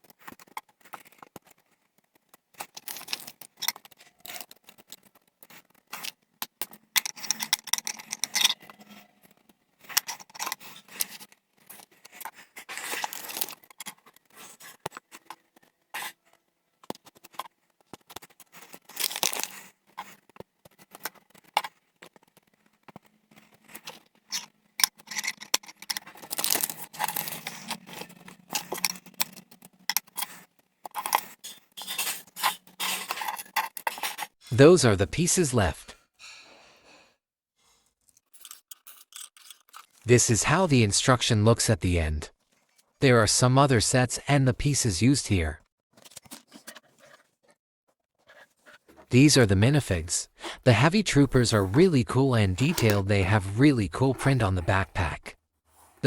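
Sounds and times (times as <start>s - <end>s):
plastic pieces clicking: 0.0s - 16.2s, 16.8s - 34.3s, 38.4s - 40.0s
pieces rustling and scraping: 0.0s - 34.4s, 37.7s - 40.1s, 46.0s - 47.6s.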